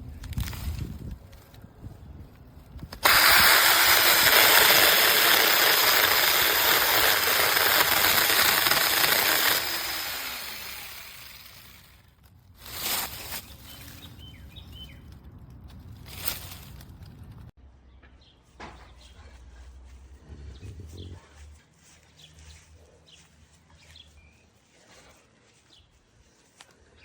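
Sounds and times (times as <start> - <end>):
mini chainsaw running: 3.0 - 13.2.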